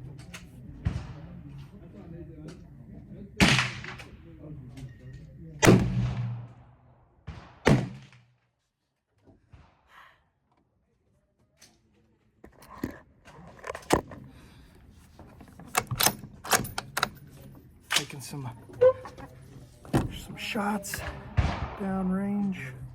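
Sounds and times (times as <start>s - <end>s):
rifle shots echoing: 3.4s - 4.2s, 5.6s - 8.3s, 21.0s - 22.3s.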